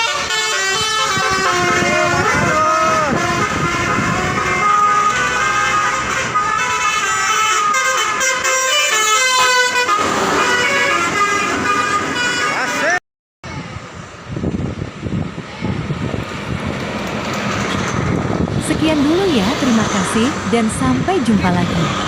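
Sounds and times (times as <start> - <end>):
multi-tone horn playing a tune: 0.0 - 13.0.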